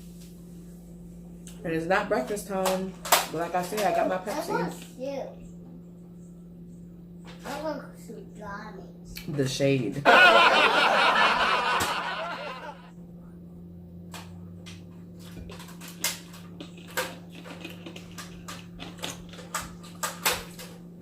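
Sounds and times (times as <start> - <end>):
steady low hum: 0.0 - 21.0
eating clicks and smacks: 14.7 - 20.7.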